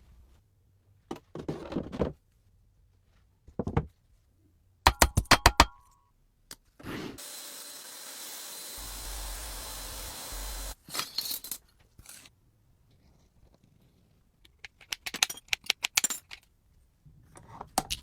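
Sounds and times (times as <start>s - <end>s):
steady hiss: 8.8s - 10.8s.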